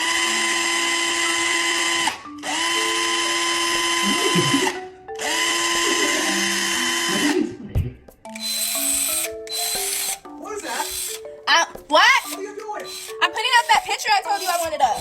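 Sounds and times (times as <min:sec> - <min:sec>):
electric drill whining: 0:00.0 - 0:07.4, 0:08.3 - 0:11.3, 0:12.0 - 0:15.0
stepped musical notes: 0:04.0 - 0:04.8.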